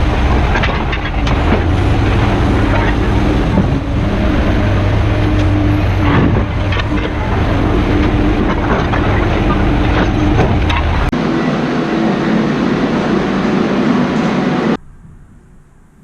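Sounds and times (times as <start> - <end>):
knocks and rattles: 0.0 - 11.2
vehicle engine running: 0.0 - 16.0.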